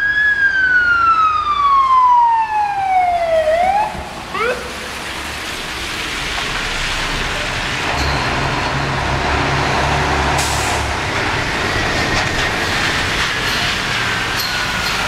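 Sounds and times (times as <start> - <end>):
truck engine low rumble: 0.0 - 15.0.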